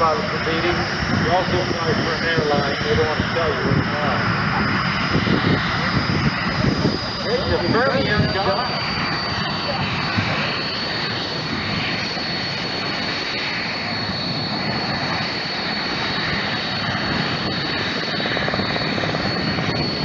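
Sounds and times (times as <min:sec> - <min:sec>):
aircraft engine running: 0:00.0 - 0:20.0.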